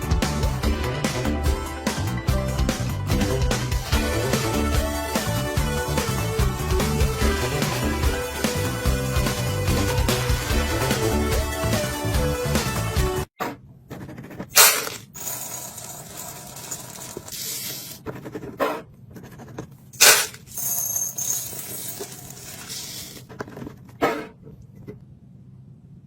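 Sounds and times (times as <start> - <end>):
sharp knocks of containers: 14.6 - 15.5, 20.0 - 20.8.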